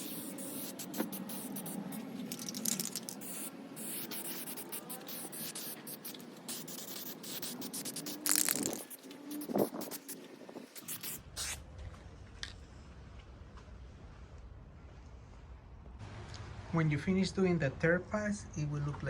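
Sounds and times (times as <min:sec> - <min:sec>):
aerosol spray can hissing: 0:00.0 - 0:11.6.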